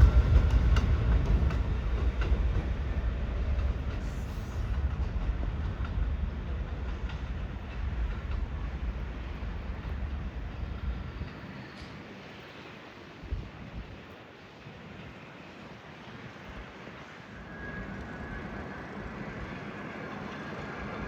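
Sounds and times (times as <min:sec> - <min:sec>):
faint wind noise: 0:00.0 - 0:21.0
subway train rumbling: 0:00.0 - 0:21.0.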